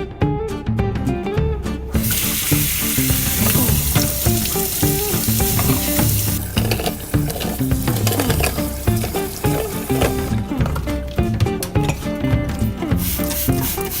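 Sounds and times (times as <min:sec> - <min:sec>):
instrumental background music: 0:00.0 - 0:14.0
loud steady hiss: 0:02.0 - 0:10.4, 0:12.9 - 0:14.0.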